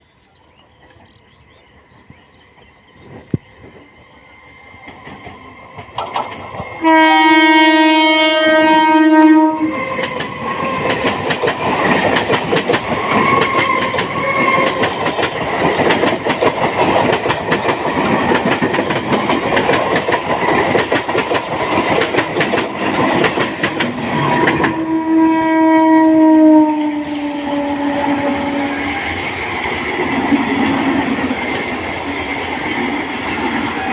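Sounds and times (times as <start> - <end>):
train wheels clattering on rails: 4.8 - 8.3, 9.2 - 24.9
train horn blast: 6.8 - 10.8, 13.1 - 14.8, 24.7 - 29.2.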